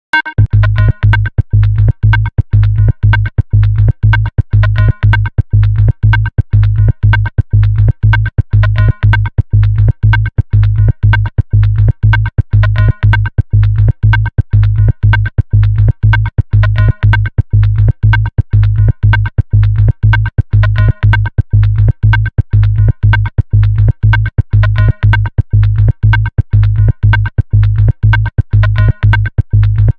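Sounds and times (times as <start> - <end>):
electronic music with synthesizer: 0.1 - 29.9.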